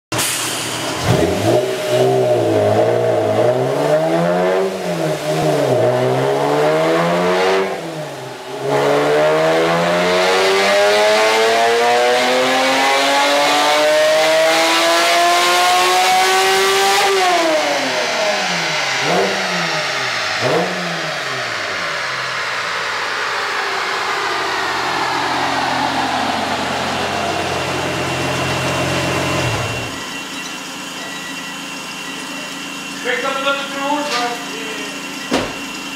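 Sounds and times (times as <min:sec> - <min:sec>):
car engine revving on a dyno: 0:00.2 - 0:35.9
car engine idling: 0:17.2 - 0:35.9.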